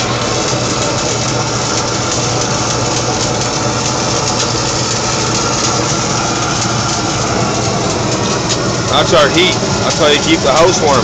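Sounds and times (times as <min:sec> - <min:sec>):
welding arc crackling: 0:00.0 - 0:11.0
welding machine hum: 0:00.0 - 0:11.0.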